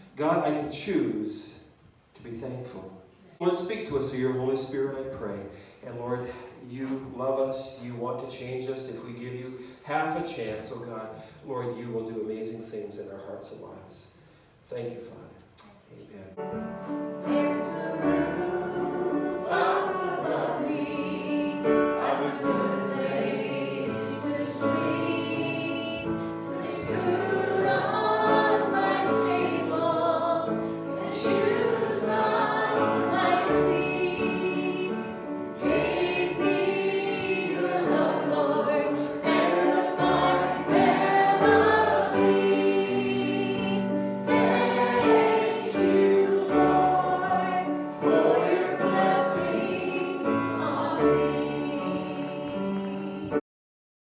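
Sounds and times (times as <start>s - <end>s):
choir singing a hymn: 16.4s - 53.4s.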